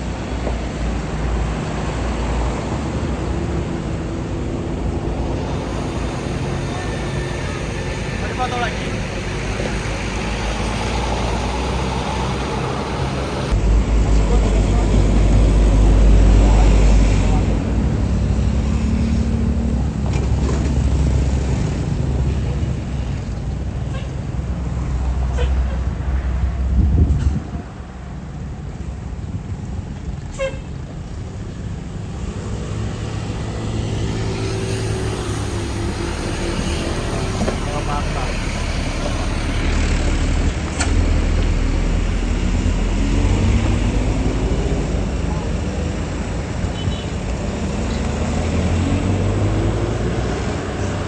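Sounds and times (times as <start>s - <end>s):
bus diesel engine drone: 0.0s - 51.0s.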